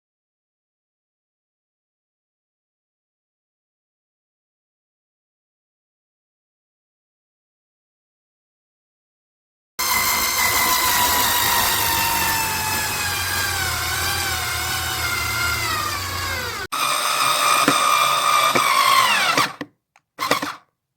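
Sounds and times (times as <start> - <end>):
cordless screwdriver motor whining: 9.8 - 20.6.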